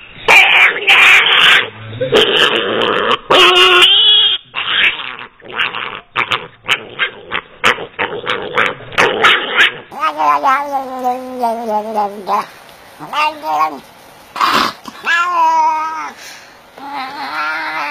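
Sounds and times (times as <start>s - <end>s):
clear pitched animal call: 0.3s - 11.2s
harsh animal calls: 0.3s - 11.2s.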